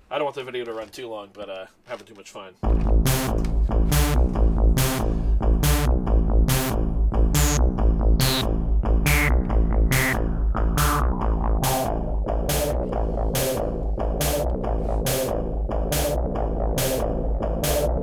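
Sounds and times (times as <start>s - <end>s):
sharp percussive hits: 2.6s - 6.8s, 8.2s - 16.2s
low bass line: 2.6s - 18.0s
resonant filter sweep: 3.1s - 17.2s.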